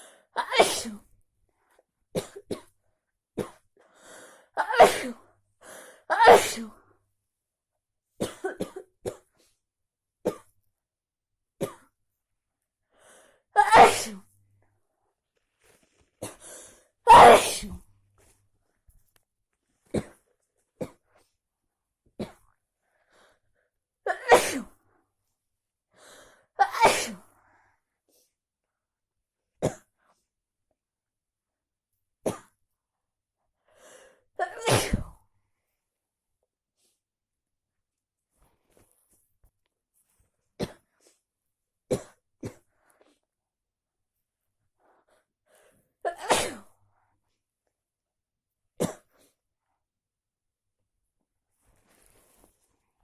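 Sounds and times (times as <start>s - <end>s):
person sneezing: 0.4s - 1.1s, 4.6s - 5.2s, 6.1s - 6.8s, 13.6s - 14.2s, 17.1s - 17.8s, 24.1s - 24.8s, 26.6s - 27.3s, 34.4s - 35.2s, 46.1s - 46.7s.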